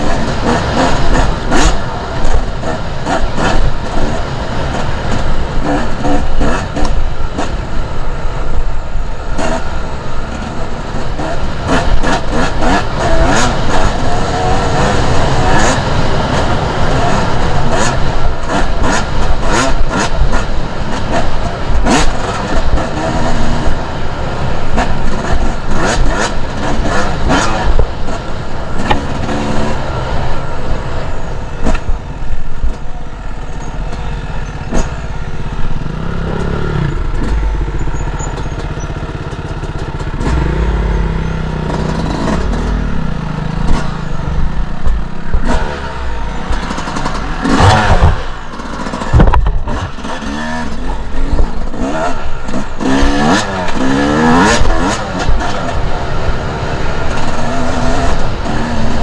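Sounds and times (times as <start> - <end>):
dirt bike engine revving: 0.0 - 59.0
bike knocking and clattering: 31.5 - 55.8.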